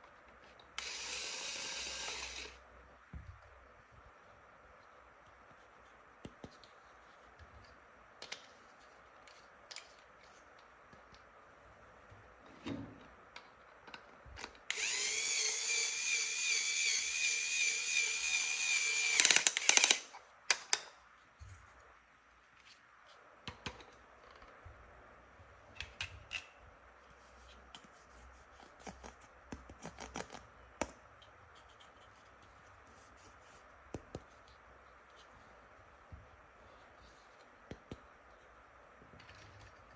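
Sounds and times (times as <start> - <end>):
toy drill whirring: 0.8 - 2.6, 14.7 - 20.2.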